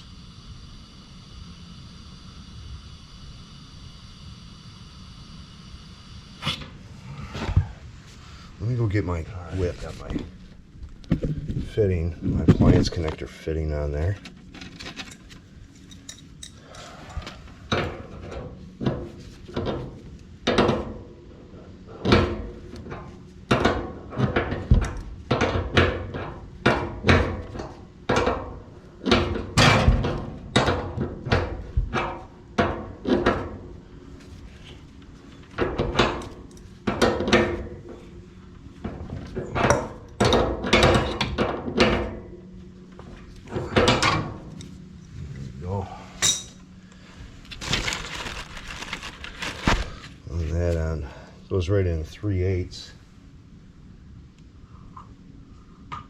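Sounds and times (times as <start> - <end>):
faint low hum: 0.0 - 56.0
metal tools clanking and knocking: 14.2 - 16.6.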